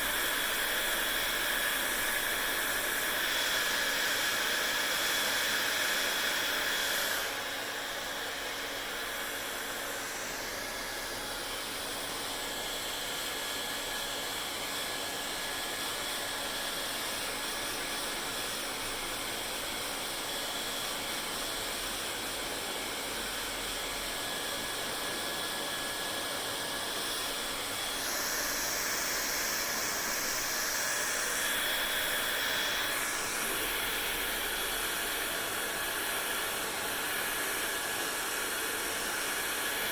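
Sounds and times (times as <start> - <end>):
hair dryer blowing: 0.0 - 39.9.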